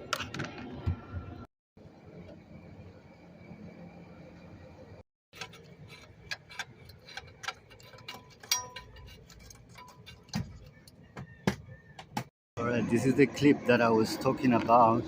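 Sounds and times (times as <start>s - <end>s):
metal clips clicking and clinking: 6.3s - 11.0s.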